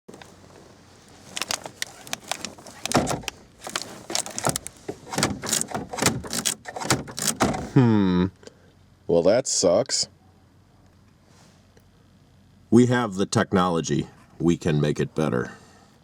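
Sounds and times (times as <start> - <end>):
glove box latch clicking and rattling: 1.3 - 7.7.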